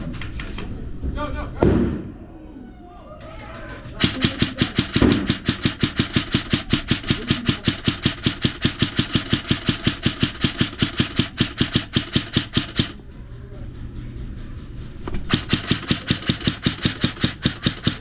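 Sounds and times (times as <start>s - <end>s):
airsoft gun full-auto firing: 3.9s - 13.0s, 15.2s - 18.0s.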